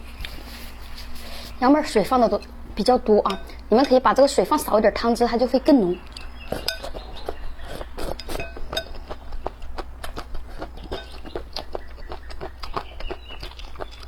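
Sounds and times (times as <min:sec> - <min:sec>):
wet chewing smacks: 0:06.0 - 0:14.0.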